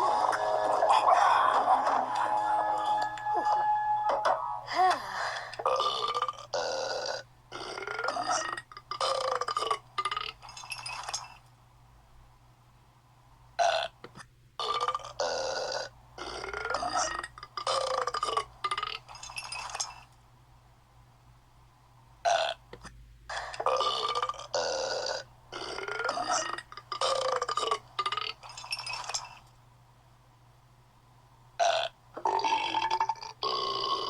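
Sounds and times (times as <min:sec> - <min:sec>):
loud drawn-out burps: 0:05.6 - 0:10.4, 0:13.6 - 0:14.0, 0:14.6 - 0:19.0, 0:22.2 - 0:22.6, 0:23.3 - 0:28.4, 0:31.6 - 0:34.0.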